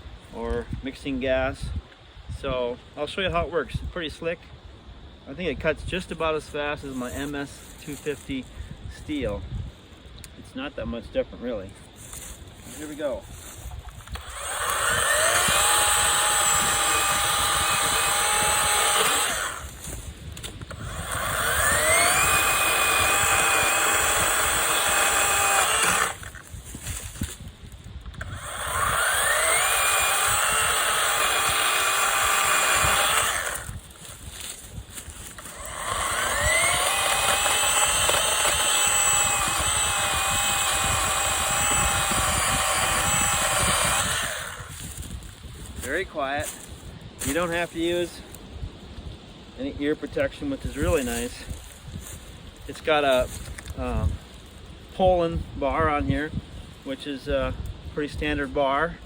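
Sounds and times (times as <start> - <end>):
electric chainsaw whirring: 12.7 - 27.5, 28.1 - 45.4.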